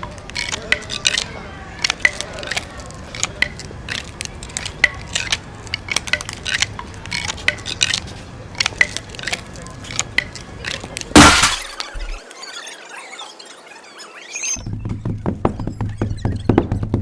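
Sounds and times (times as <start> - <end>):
small hard objects clicking and crunching: 0.0 - 12.2.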